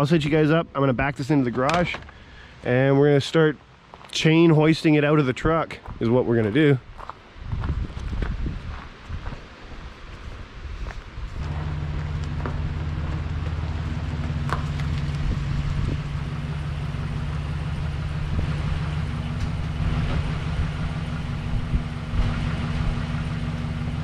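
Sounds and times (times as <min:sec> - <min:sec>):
truck engine idling: 0:11.4 - 0:24.0.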